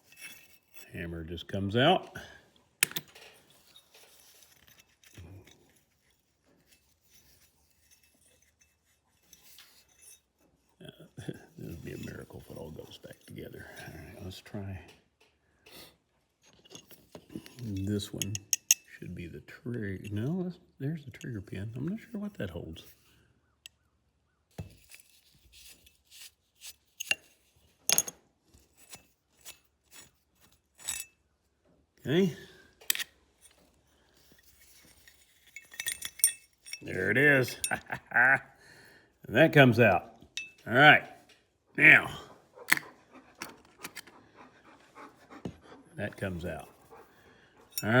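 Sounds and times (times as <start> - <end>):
small metal parts clicking: 2.8 - 10.2, 16.5 - 19.0, 26.6 - 28.2, 28.8 - 31.2, 32.8 - 33.6, 34.2 - 37.9.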